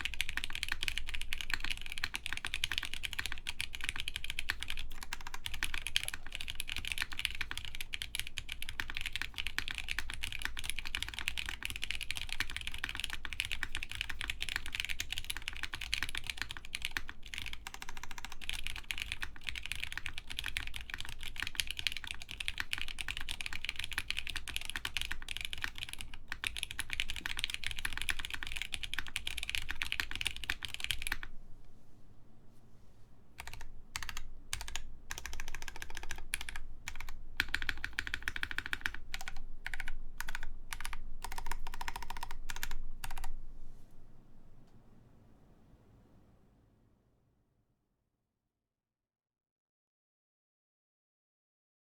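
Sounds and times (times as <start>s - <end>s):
fast mechanical keyboard typing: 0.0s - 31.3s, 33.4s - 43.3s.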